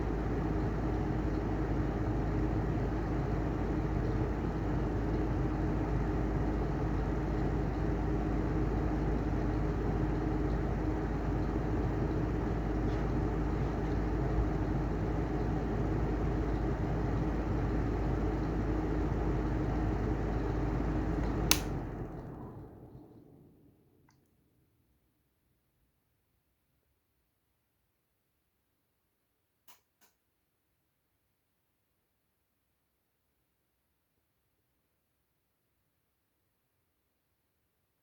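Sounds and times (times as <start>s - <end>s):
exhaust fan whirring: 0.0s - 23.9s
sharp switch click: 21.5s - 21.8s.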